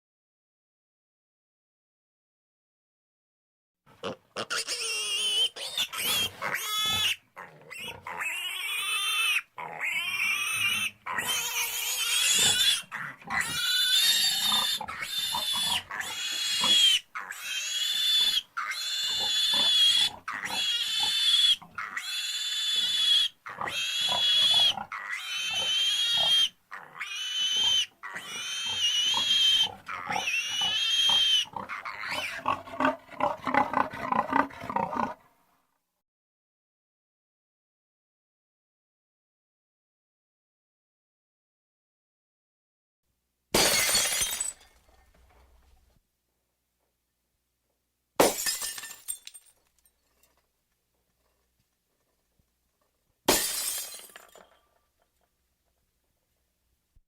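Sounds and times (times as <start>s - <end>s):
pig squealing: 4.0s - 35.2s.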